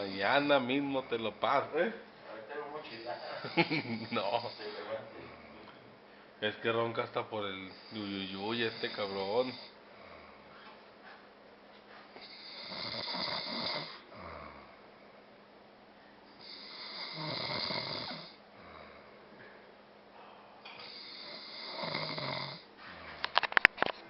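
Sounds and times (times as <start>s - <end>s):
man snoring: 0.0s - 1.4s, 3.4s - 5.7s, 7.6s - 10.4s, 12.2s - 14.8s, 16.3s - 19.2s, 20.8s - 23.2s.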